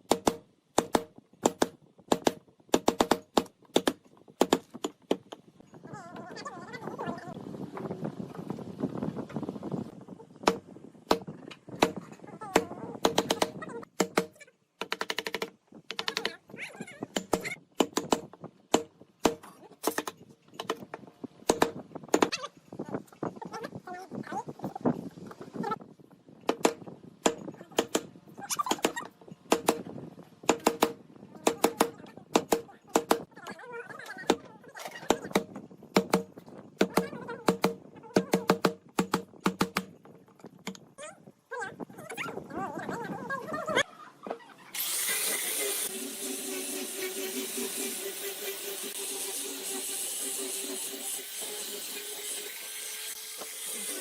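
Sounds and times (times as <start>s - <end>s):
hammer striking wood: 0.0s - 5.4s, 10.4s - 12.0s, 12.6s - 16.3s, 17.1s - 20.8s, 26.5s - 28.1s, 28.7s - 29.8s, 30.5s - 33.2s, 35.1s - 39.9s.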